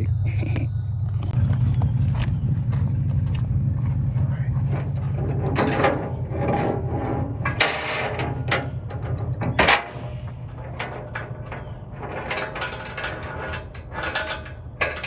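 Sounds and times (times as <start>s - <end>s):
engine idling: 0.0s - 15.0s
sharp knocks and clatters: 4.6s - 15.0s.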